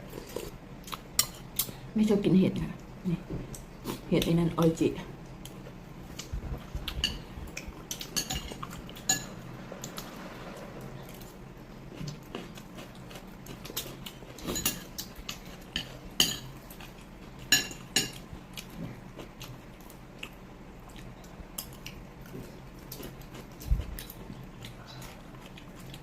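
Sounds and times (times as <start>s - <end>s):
cutlery clinking on plates: 8.0s - 9.4s, 15.8s - 16.5s.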